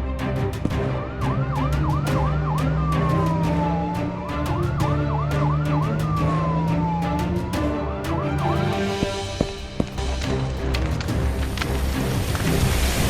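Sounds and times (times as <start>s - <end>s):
music with steady beat: 0.0s - 12.1s
police siren: 0.7s - 9.3s.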